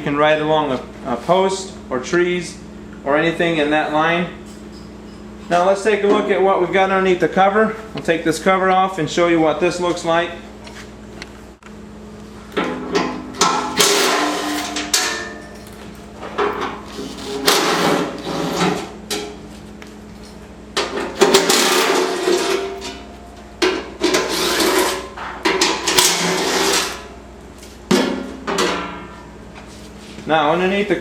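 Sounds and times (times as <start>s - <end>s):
metal cover clanking and scraping: 12.6s - 19.4s, 20.8s - 27.1s, 27.9s - 29.3s.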